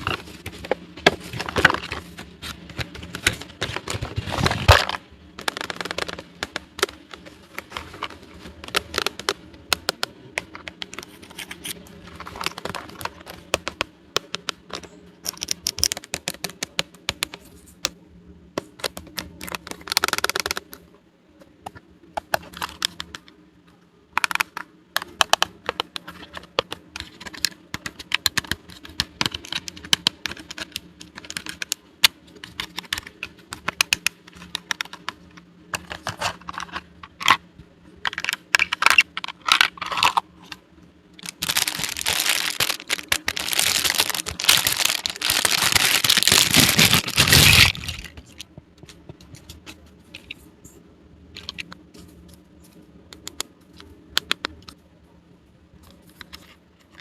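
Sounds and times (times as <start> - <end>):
packaging being torn open: 41.2 - 48.2.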